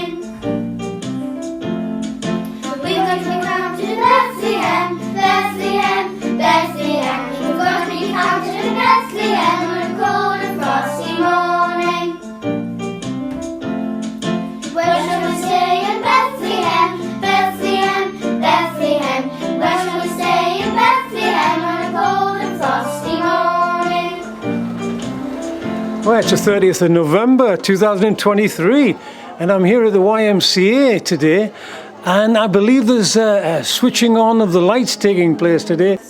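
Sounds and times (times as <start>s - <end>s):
song with singing: 2.5s - 12.3s, 14.6s - 27.6s, 31.9s - 33.9s.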